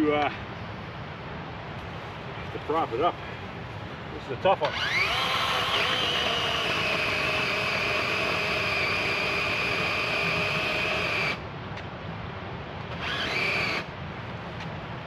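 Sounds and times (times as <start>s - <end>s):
electric chainsaw cutting wood: 4.6s - 11.4s, 12.9s - 13.9s.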